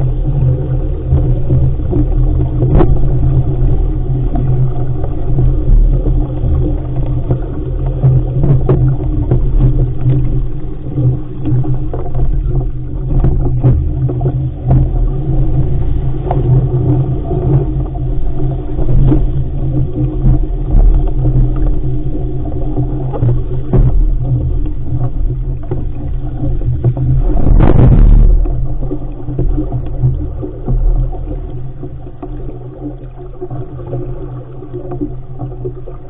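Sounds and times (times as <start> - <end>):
light knocks from boat: 2.5 - 3.5
wind buffeting microphone: 12.2 - 30.8.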